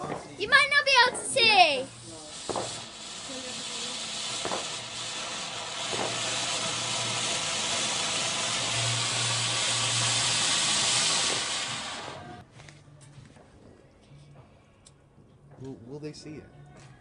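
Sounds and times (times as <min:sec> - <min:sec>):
firework fountain hissing: 0:00.0 - 0:12.4.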